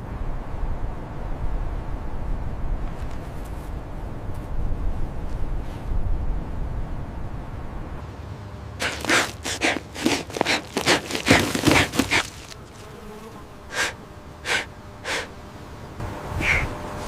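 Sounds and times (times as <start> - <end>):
dog gasping breaths: 8.8 - 12.5, 13.7 - 15.3.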